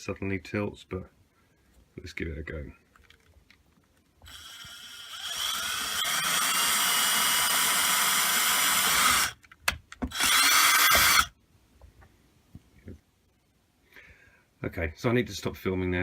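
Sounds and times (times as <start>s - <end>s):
electric drill boring: 4.2s - 9.4s, 10.1s - 11.3s.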